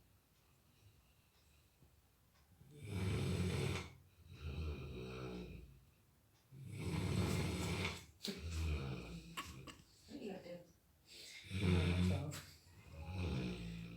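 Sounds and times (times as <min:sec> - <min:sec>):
dog snoring: 0:02.6 - 0:05.9, 0:06.5 - 0:09.7, 0:11.4 - 0:13.9.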